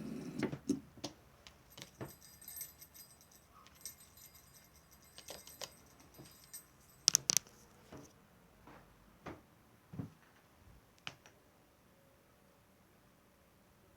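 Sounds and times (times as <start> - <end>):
sharp clicks of small objects: 7.0 - 7.6
soft taps on small objects: 7.0 - 8.0.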